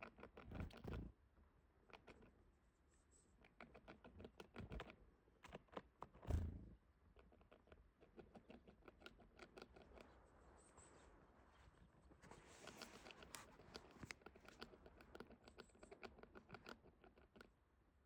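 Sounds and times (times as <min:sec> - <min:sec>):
squirrel teeth scraping bone: 0:12.6 - 0:17.6.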